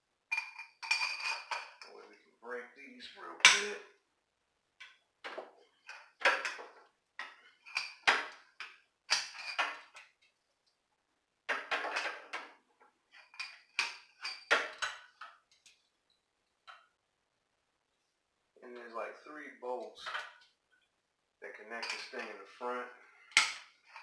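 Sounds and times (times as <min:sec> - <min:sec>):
metal tools clinking: 0:00.3 - 0:02.0, 0:09.1 - 0:10.0, 0:21.8 - 0:22.4.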